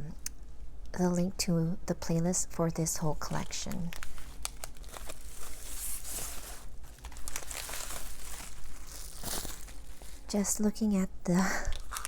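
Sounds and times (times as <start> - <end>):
packaging crinkling: 3.2 - 10.5, 11.5 - 12.0
small clicks and crackles: 3.3 - 10.4, 11.6 - 12.0.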